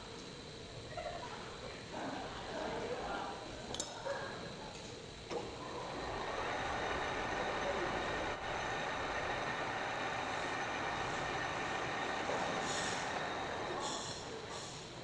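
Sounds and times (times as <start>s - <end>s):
machine running with hiss: 0.0s - 15.0s
short hissing bursts: 12.4s - 15.0s.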